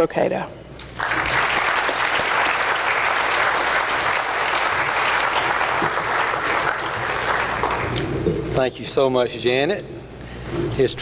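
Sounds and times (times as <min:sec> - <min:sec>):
audience applauding: 0:00.9 - 0:08.1.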